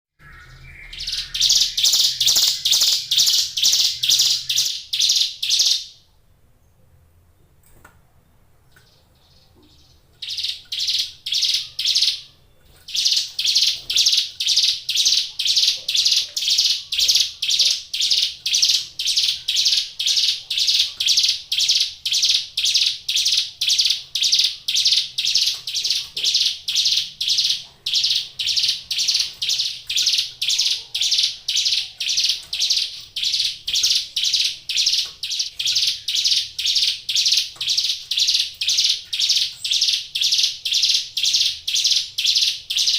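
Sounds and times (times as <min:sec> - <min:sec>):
bird harsh buzzy calls: 0:00.2 - 0:05.8.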